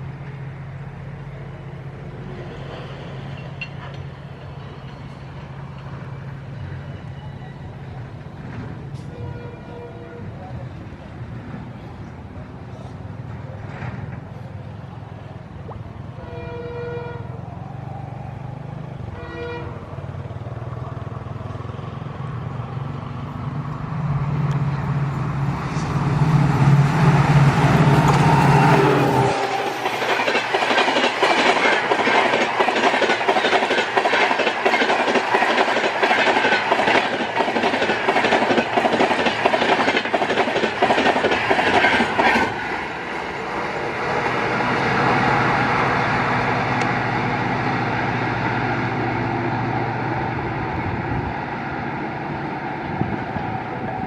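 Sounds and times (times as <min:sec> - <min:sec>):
locomotive horn blasts: 0:09.0 - 0:10.4, 0:16.1 - 0:17.4, 0:19.1 - 0:19.8
locomotive engine: 0:19.8 - 0:54.0
train wheels clattering over rail joints: 0:27.4 - 0:42.9
wind noise: 0:50.3 - 0:51.8, 0:52.4 - 0:54.0.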